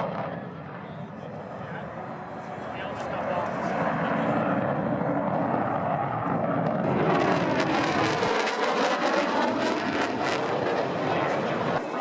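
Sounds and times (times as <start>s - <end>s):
jet engine roaring: 0.0s - 12.0s.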